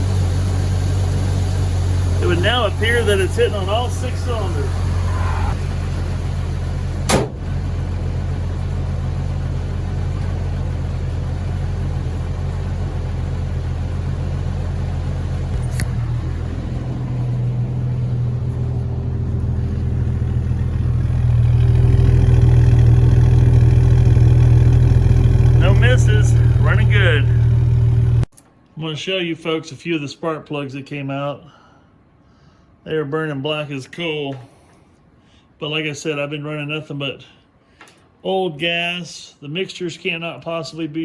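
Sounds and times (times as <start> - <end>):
car engine running: 0.0 - 28.3
sharp click: 7.1 - 7.4.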